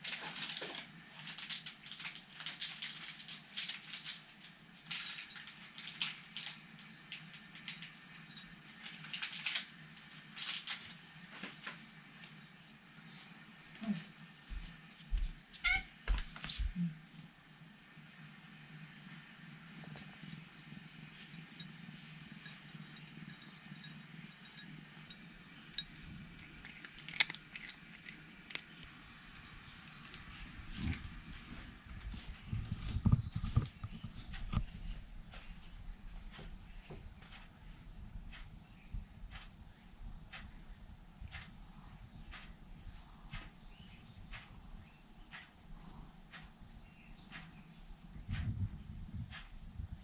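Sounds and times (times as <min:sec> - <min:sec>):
cat chewing and crunching food: 0:00.0 - 0:12.4, 0:23.9 - 0:38.5.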